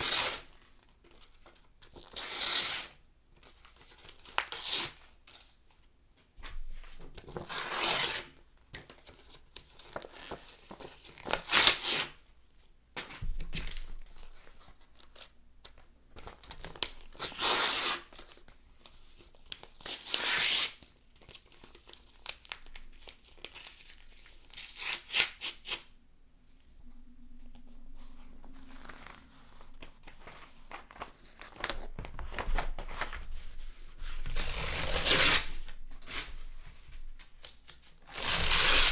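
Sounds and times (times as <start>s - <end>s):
drawn-out tearing of pages: 7.4s - 8.3s, 34.0s - 36.3s, 38.1s - 38.9s
paper ripping: 28.6s - 33.4s, 34.0s - 36.4s, 38.1s - 38.9s.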